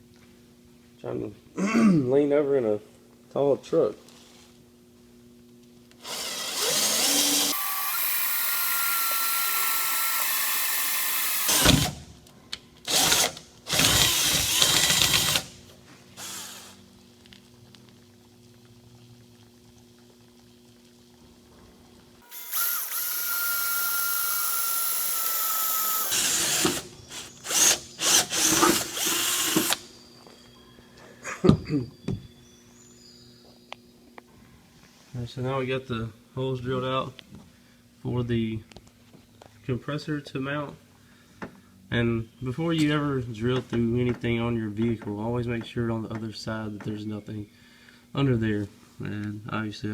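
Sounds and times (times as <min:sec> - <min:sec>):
power drill boring holes: 0:06.0 - 0:12.0, 0:12.9 - 0:15.6, 0:16.2 - 0:16.8, 0:22.2 - 0:29.9.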